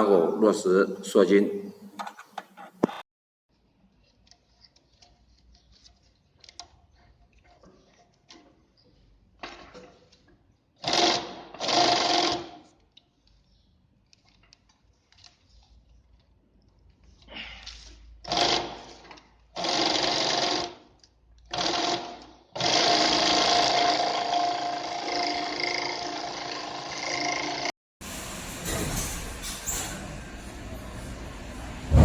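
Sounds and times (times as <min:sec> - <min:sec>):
sewing machine running: 0:21.6 - 0:32.0.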